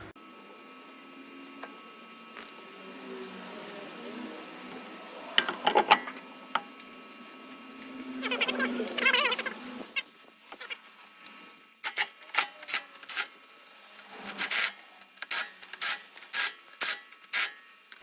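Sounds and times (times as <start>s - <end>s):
faint background hum: 0.0s - 18.0s.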